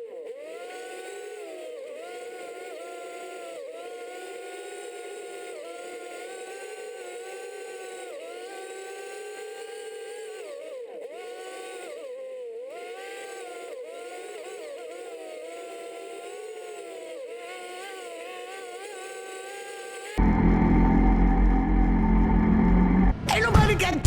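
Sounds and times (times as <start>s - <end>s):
small motor droning: 13.0s - 23.1s.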